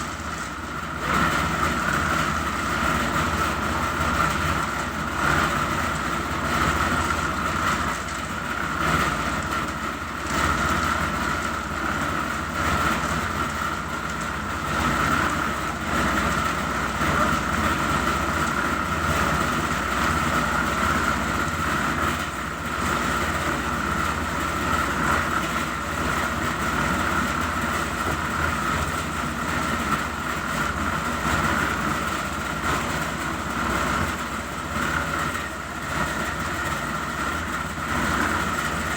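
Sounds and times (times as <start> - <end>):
dense mechanical rumble: 0.0 - 38.9.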